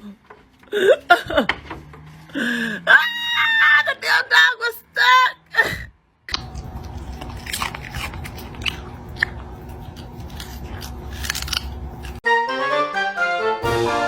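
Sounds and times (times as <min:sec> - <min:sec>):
chewing crunching and clicking: 0:06.3 - 0:12.2.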